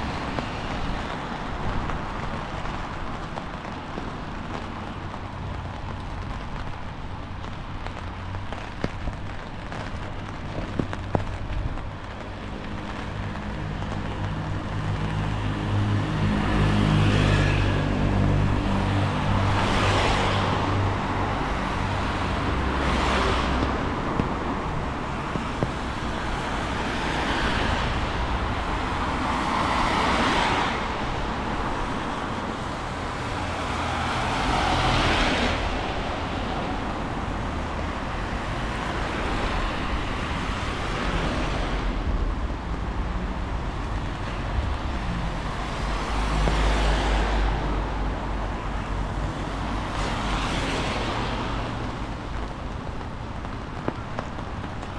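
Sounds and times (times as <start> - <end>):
cars passing on wet tarmac: 0.0 - 54.9.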